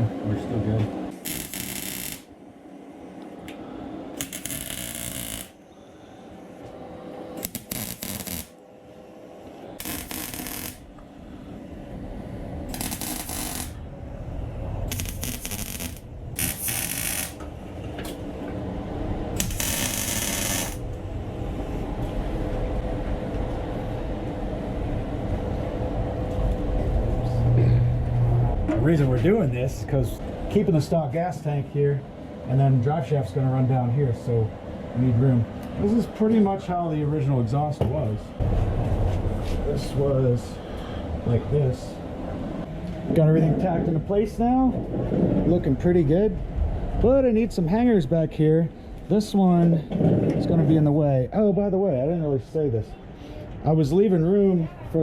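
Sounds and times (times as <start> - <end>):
low steady hum: 0.0 - 54.9
welder crackling: 1.1 - 2.3, 4.2 - 5.6, 7.4 - 8.6, 9.8 - 11.0, 12.6 - 13.8, 14.8 - 17.4, 19.4 - 20.9.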